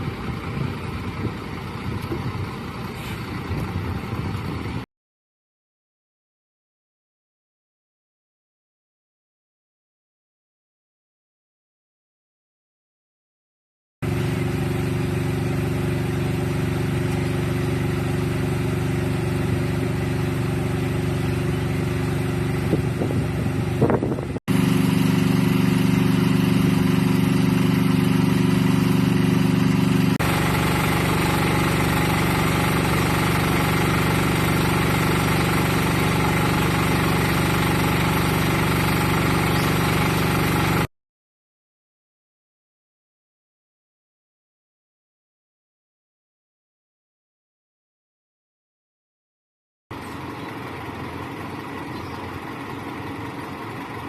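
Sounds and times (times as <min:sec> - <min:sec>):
engine running steadily: 0:00.0 - 0:04.9, 0:14.0 - 0:40.9, 0:49.9 - 0:54.0.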